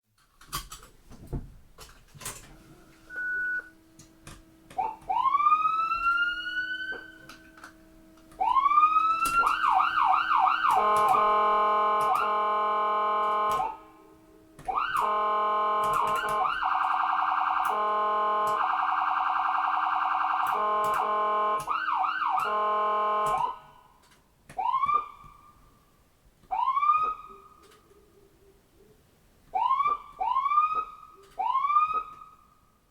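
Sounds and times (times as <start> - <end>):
short beep: 3.1 - 3.7
ambulance siren wailing and yelping: 4.8 - 7.8, 8.4 - 14.0, 14.6 - 23.7, 24.6 - 25.5, 26.5 - 27.7, 29.5 - 32.5.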